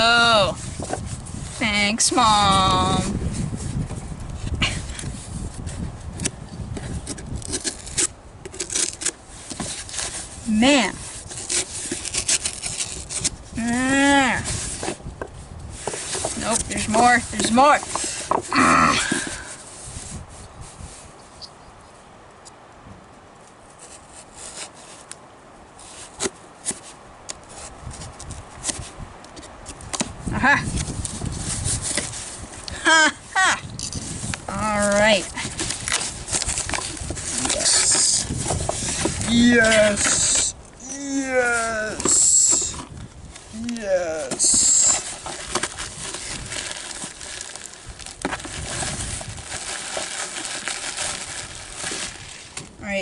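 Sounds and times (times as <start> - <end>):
hands rustling parcel packaging: 0.0 - 21.2, 25.7 - 53.0
crinkling of wrapping material: 6.8 - 15.0, 33.7 - 40.9, 42.0 - 52.8.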